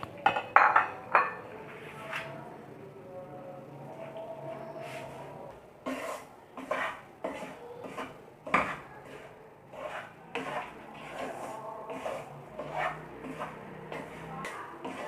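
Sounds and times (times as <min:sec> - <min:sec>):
spatula scraping a pan: 0:04.5 - 0:15.0.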